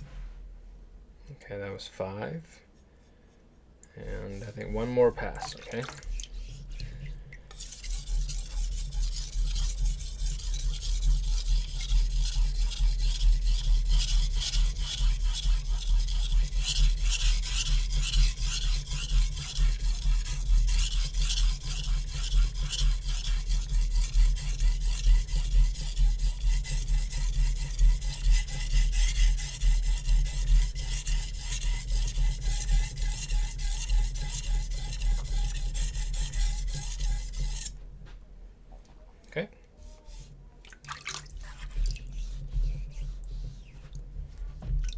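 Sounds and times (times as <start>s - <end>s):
knife scraping on sharpening stone: 7.5s - 11.1s.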